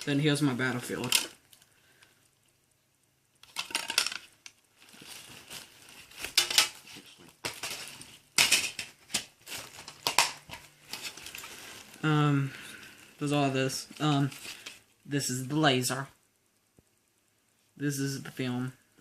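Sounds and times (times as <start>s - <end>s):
plastic parts clicking and clattering: 0.9s - 1.6s, 3.4s - 11.9s.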